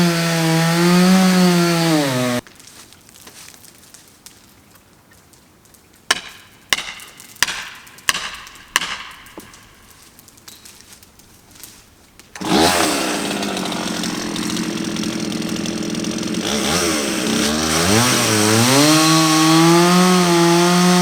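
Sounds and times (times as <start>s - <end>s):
chainsaw engine running: 0.0s - 2.4s, 12.4s - 21.0s.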